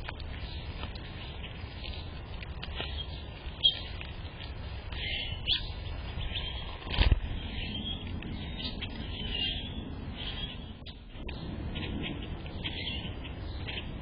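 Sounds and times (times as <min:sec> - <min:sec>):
small birds chirping: 0:00.0 - 0:14.0
steady low rumble: 0:00.0 - 0:14.0.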